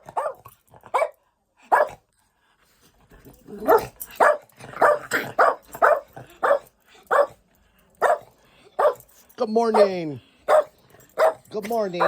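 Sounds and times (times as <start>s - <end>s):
dog yelping: 0.0s - 1.1s, 3.6s - 7.4s, 8.0s - 9.0s, 9.8s - 12.0s
dog barking: 0.0s - 2.0s, 3.6s - 7.4s, 8.0s - 9.1s, 9.7s - 12.0s.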